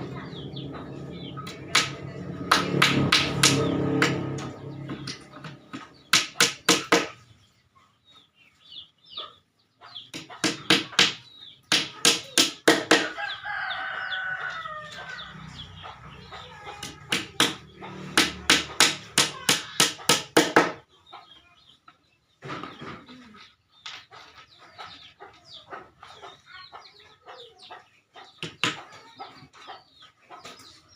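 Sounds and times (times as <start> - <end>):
rooster crowing: 13.0 - 15.4.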